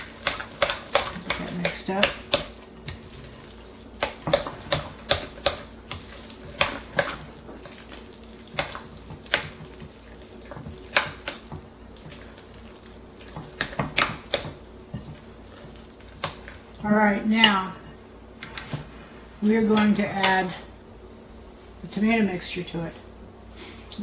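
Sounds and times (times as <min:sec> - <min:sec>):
thick mixture being stirred: 0:00.0 - 0:17.7.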